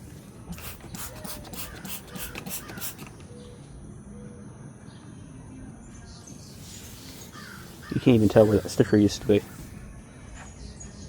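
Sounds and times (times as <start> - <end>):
cloth rag rubbing boat hull: 6.6 - 9.8.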